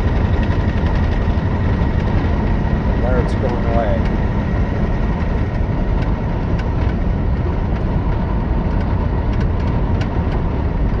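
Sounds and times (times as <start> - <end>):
diesel truck engine rumbling: 0.0 - 11.0.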